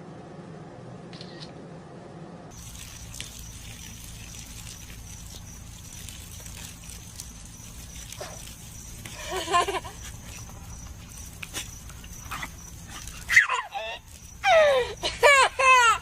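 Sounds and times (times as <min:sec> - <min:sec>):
background hiss and hum: 0:00.0 - 0:16.0
dog whining: 0:12.3 - 0:14.9.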